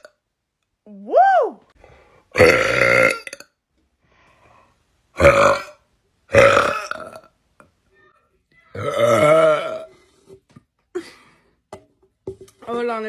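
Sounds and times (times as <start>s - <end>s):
person belching: 2.3s - 3.6s, 5.2s - 7.3s, 8.7s - 9.9s.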